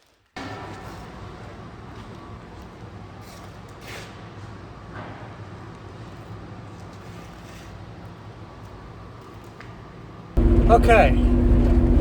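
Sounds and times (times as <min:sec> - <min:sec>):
vehicle engine hum: 0:10.4 - 0:12.0.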